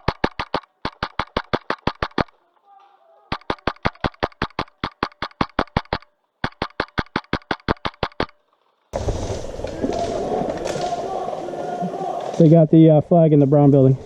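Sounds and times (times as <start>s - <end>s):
airsoft rifle firing rapid shots: 0.0s - 2.4s, 3.3s - 8.4s.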